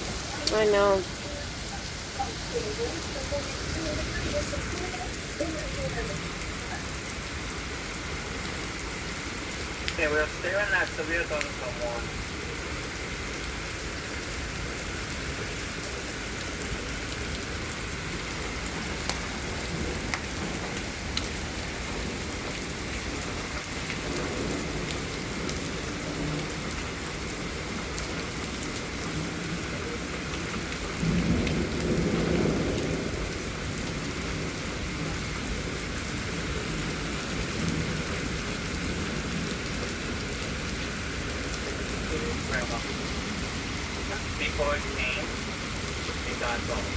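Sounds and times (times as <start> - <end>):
heavy rain falling: 0.0 - 46.9
low rumble of thunder: 16.6 - 22.8, 23.7 - 44.4.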